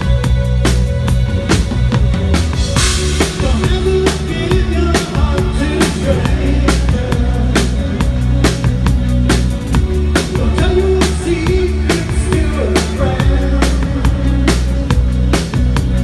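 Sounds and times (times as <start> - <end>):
rock band playing: 0.0 - 16.0.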